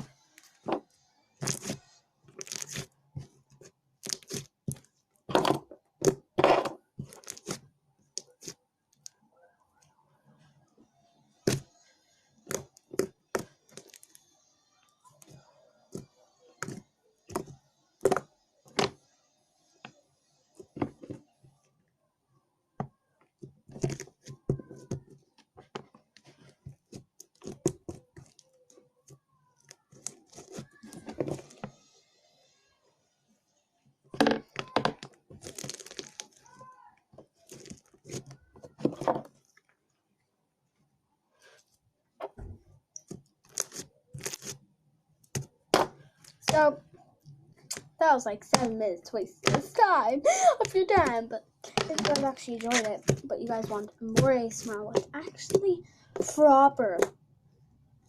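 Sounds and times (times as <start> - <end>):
slime popping and crackling: 1.4 - 1.8, 2.4 - 2.9, 4.0 - 7.6, 34.3 - 36.6, 37.4 - 38.3, 43.0 - 44.6, 46.3 - 46.7, 50.4 - 57.1.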